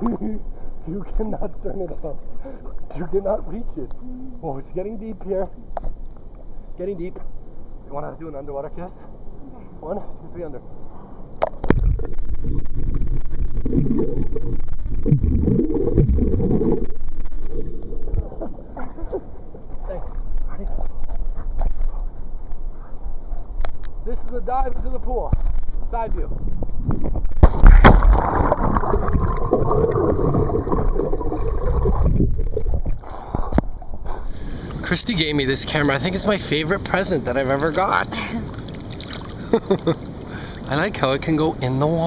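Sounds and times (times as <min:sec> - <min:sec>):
underwater rumbling and gurgling: 0:11.6 - 0:18.8, 0:26.4 - 0:34.1.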